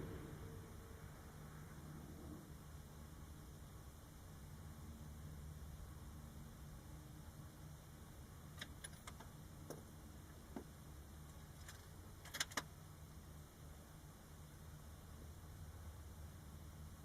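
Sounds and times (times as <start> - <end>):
low steady hum: 0.0 - 17.0
faint irregular clicks: 8.5 - 12.8.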